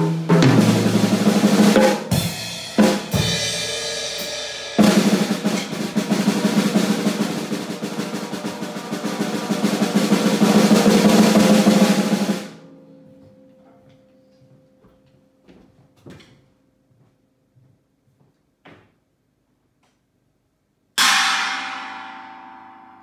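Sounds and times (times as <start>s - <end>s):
fast drum roll: 0.0s - 12.6s
drum strikes ringing: 0.0s - 12.7s, 21.0s - 23.0s.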